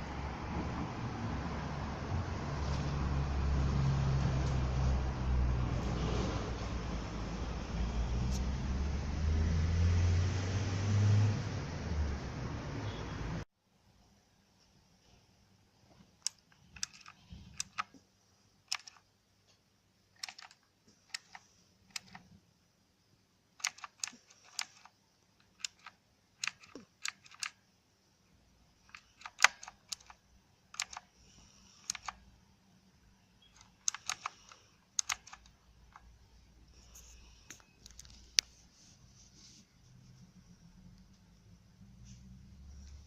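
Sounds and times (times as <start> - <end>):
mechanical keyboard key clicks: 16.2 - 18.0, 18.7 - 19.0, 20.2 - 22.2, 23.6 - 27.6, 28.9 - 31.1, 31.8 - 32.2, 33.5 - 36.1.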